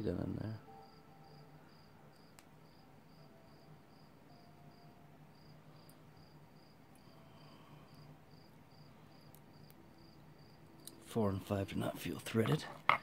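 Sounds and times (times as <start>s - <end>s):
cricket chirping: 0.6s - 11.0s.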